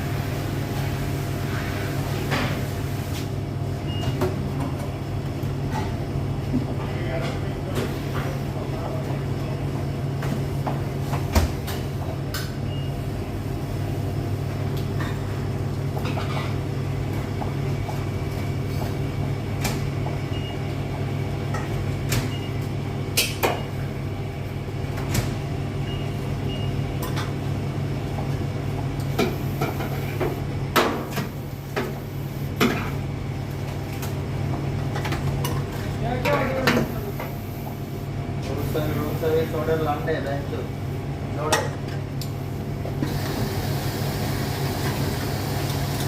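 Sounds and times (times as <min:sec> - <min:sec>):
kitchen machinery humming: 0:00.0 - 0:46.0.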